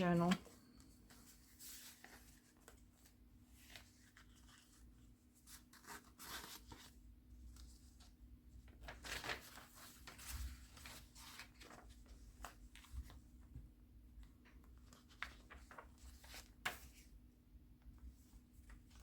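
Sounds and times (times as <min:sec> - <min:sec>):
paper pages rustling: 0:00.0 - 0:13.5, 0:14.3 - 0:17.1.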